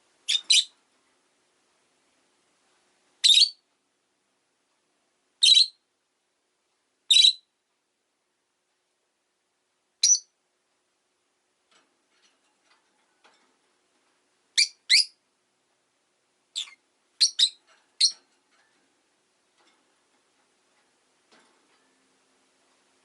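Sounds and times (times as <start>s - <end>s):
lovebird chirping: 0.2s - 0.8s, 3.2s - 3.6s, 5.4s - 5.8s, 7.1s - 7.5s, 10.0s - 10.4s, 14.6s - 15.2s, 16.5s - 18.2s.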